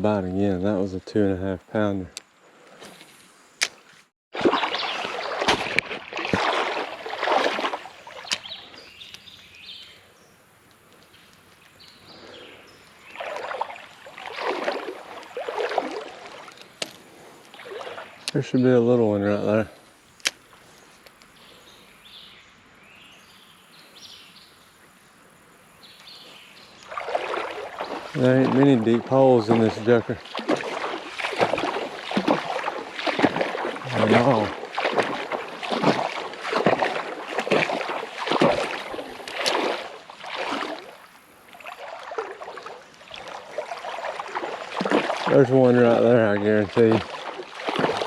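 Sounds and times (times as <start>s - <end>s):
moving water hiss: 4.5s - 22.3s, 23.2s - 48.0s.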